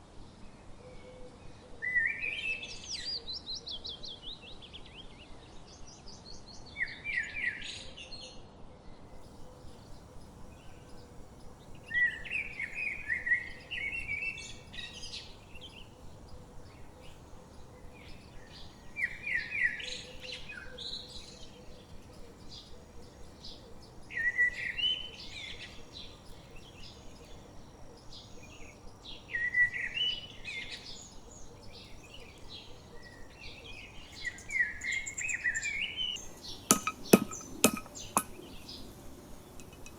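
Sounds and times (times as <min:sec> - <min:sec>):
faint bird chirps: 0:09.2 - 0:39.9
songbird trilling: 0:09.2 - 0:39.9.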